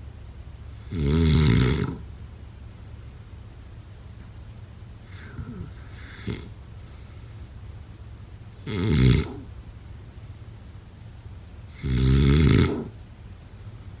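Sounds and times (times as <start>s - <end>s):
person snoring: 5.1s - 6.5s.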